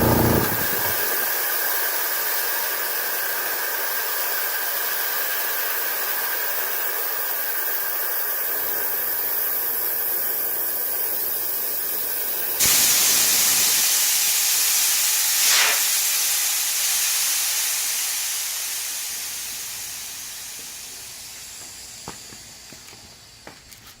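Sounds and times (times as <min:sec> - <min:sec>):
compressed air hissing: 0:12.6 - 0:22.7.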